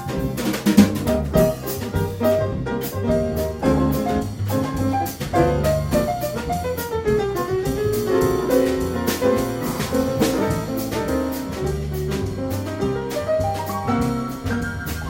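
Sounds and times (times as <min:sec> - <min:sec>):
double bass: 0:00.0 - 0:15.0
drum kit with cymbals: 0:00.0 - 0:15.0
piano: 0:00.0 - 0:15.0.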